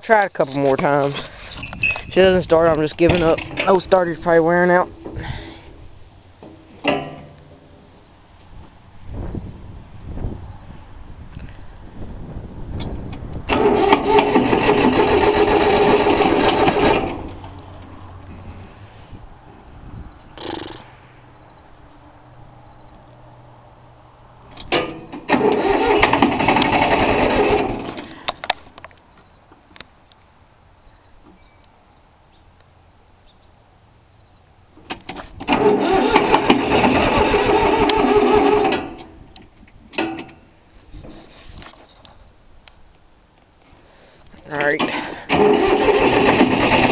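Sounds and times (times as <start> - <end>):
electric starter cranking diesel engine: 13.5 - 17.6, 24.6 - 28.4, 34.9 - 39.2, 44.8 - 46.9.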